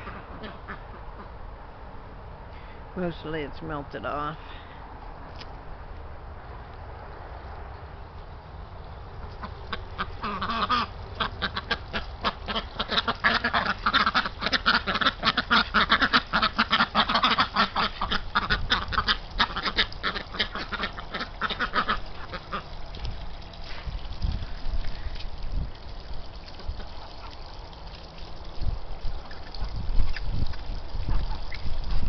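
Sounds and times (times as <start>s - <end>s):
ducks quacking: 0.0s - 1.4s, 9.2s - 22.8s
wind rumble on microphone: 18.1s - 19.2s, 22.9s - 26.9s, 28.4s - 32.0s.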